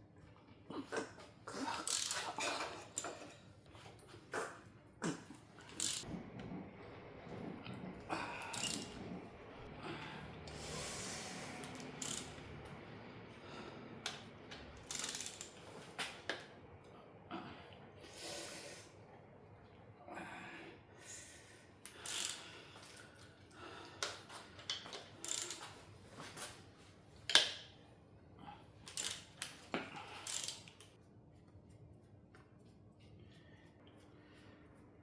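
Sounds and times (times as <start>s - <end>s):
metallic clicks and knocks of tools: 1.9s - 3.4s, 5.6s - 6.1s, 8.5s - 9.0s, 11.6s - 12.7s, 14.1s - 16.4s, 24.0s - 25.8s, 28.9s - 31.0s.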